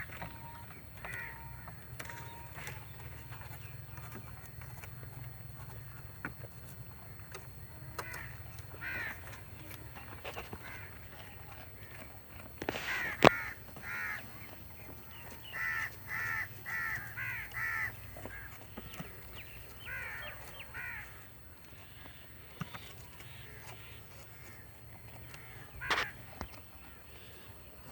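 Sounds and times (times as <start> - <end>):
crow cawing: 0.2 - 2.8, 7.9 - 9.4, 10.4 - 12.0, 12.7 - 22.3, 23.2 - 27.3.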